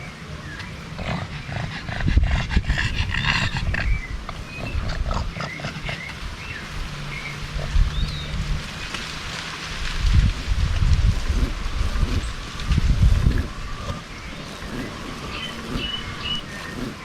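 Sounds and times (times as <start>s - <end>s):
wind rumbling on microphone: 0.0s - 17.0s
high chirping animal calls: 0.5s - 8.4s.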